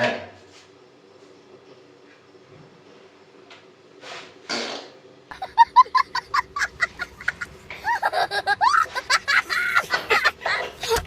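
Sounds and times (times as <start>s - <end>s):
rapid laughter: 5.3s - 11.0s.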